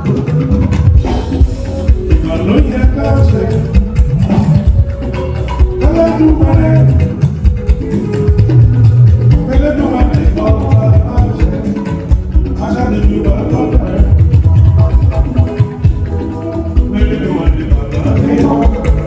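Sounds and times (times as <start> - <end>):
guitars: 0.0 - 19.0
percussion with steady beat: 0.0 - 19.0
singing: 9.3 - 19.0.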